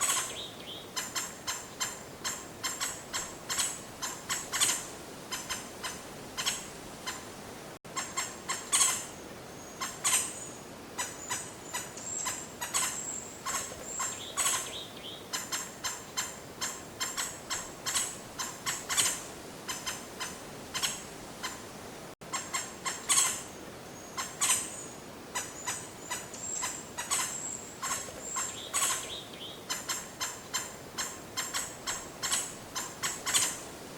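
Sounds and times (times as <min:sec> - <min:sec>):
birds chirping high-pitched: 0:00.0 - 0:05.6, 0:08.0 - 0:21.6, 0:24.0 - 0:33.6.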